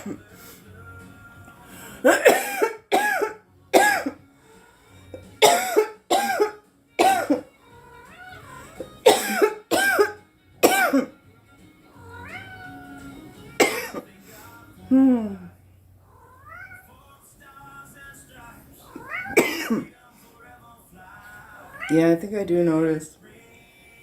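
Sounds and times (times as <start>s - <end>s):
woman coughing: 2.0s - 4.2s, 5.4s - 7.5s, 9.0s - 11.1s, 13.6s - 14.0s, 19.4s - 19.9s.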